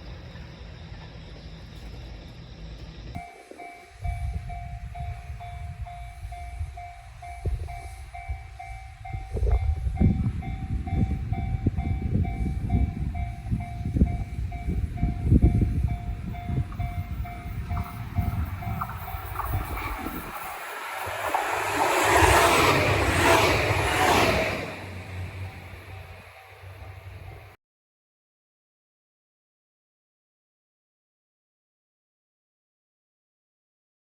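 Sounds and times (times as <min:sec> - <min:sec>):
train rumble and wheel clacks: 0:00.0 - 0:27.6
level crossing bell ringing: 0:03.2 - 0:19.2.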